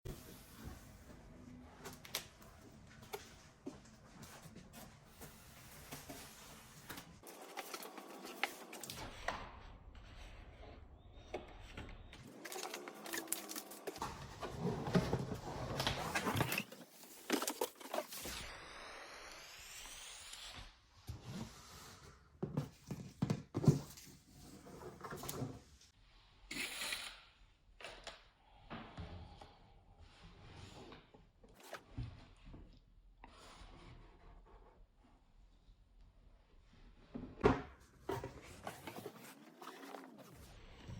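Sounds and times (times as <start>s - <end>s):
packaging rustling and clicking: 12.3s - 14.0s.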